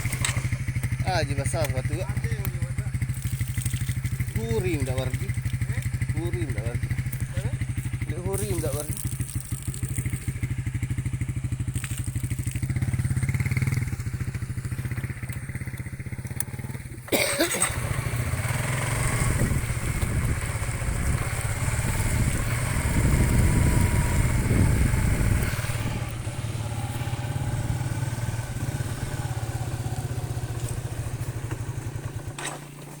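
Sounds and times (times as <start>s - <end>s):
small motorcycle engine running: 0.0s - 33.0s
rushing water: 2.4s - 15.8s.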